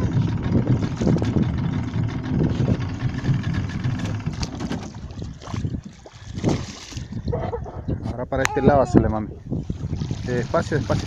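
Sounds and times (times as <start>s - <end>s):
outboard motor idling: 0.0s - 7.8s.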